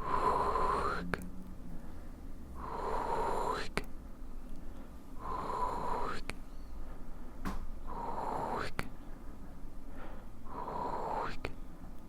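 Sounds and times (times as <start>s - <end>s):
mouth click: 0.0s - 1.4s, 2.6s - 4.6s, 5.2s - 6.5s, 7.5s - 8.9s, 10.5s - 12.0s
breathy mouth noises: 0.0s - 6.5s, 7.8s - 9.1s, 9.9s - 12.0s.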